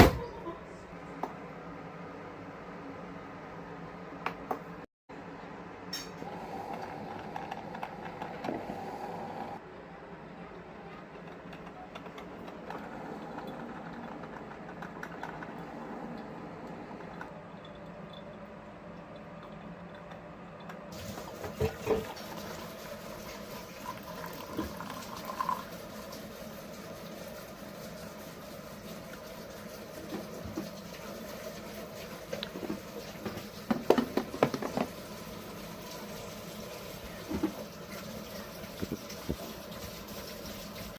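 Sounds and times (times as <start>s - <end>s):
coffee maker humming and crackling: 0.4s - 40.9s
coffee maker pops and gurgles: 33.3s - 34.9s.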